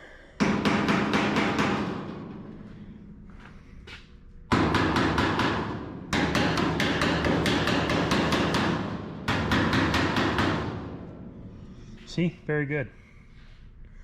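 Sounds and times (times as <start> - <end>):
hammer blows on steel panel: 4.5 - 11.1.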